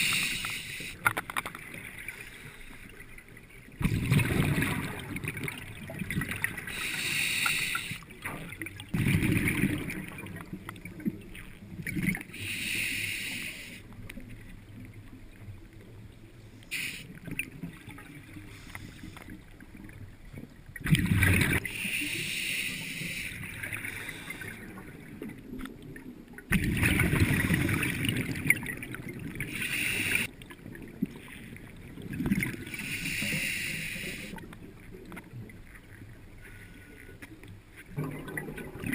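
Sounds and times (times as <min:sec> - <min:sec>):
regulator inhale hiss: 0:00.0 - 0:01.0, 0:06.7 - 0:08.1, 0:12.3 - 0:13.9, 0:16.7 - 0:17.1, 0:21.7 - 0:24.7, 0:29.5 - 0:30.3, 0:32.7 - 0:34.4
exhaled bubbles rumbling: 0:03.6 - 0:07.0, 0:08.1 - 0:12.4, 0:19.3 - 0:21.7, 0:23.4 - 0:32.8, 0:37.9 - 0:38.9.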